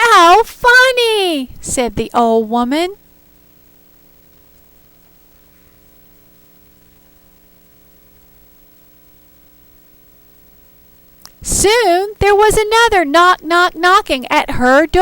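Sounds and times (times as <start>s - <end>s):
faint steady hiss: 0.0s - 15.0s
low electrical hum: 0.0s - 15.0s.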